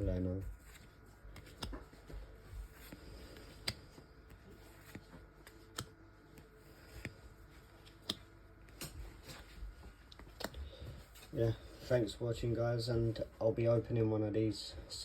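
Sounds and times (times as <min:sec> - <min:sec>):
trading cards clicking: 0:00.6 - 0:07.2, 0:07.8 - 0:09.4, 0:10.1 - 0:10.6.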